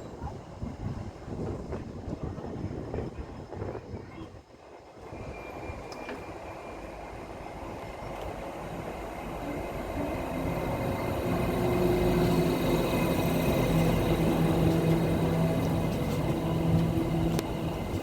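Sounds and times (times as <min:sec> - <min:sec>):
train approaching: 0:04.6 - 0:18.0.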